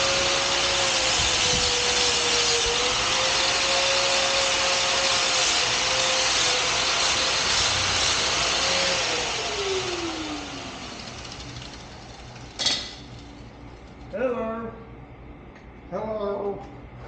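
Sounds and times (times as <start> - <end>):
electric grinder on metal: 0.0 - 13.2.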